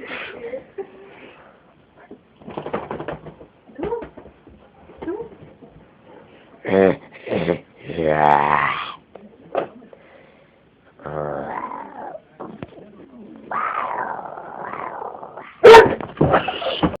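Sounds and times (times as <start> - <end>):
dog growling and yipping: 11.0 - 12.2, 13.4 - 15.7.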